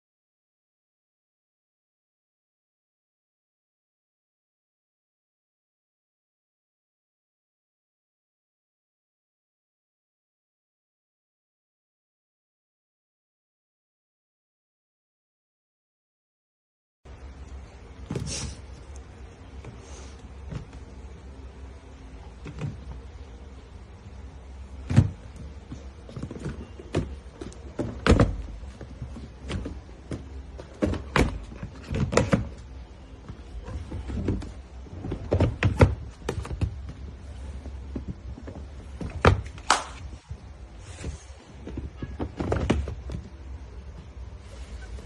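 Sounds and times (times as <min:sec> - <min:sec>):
steady low hum: 0:17.1 - 0:45.0
hard objects knocking and clunking: 0:24.8 - 0:32.6, 0:33.3 - 0:37.1.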